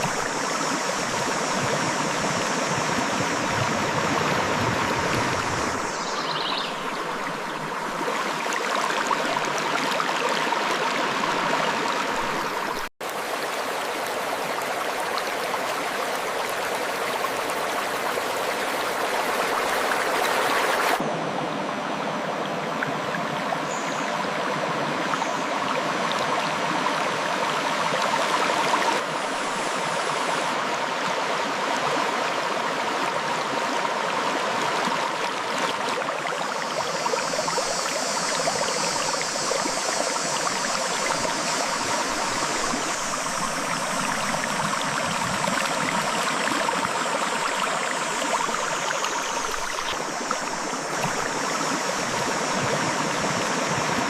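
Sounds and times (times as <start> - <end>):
high hiss: 0.0 - 7.8, 36.4 - 54.0
river water flowing over rocks: 0.0 - 21.0, 22.2 - 54.0.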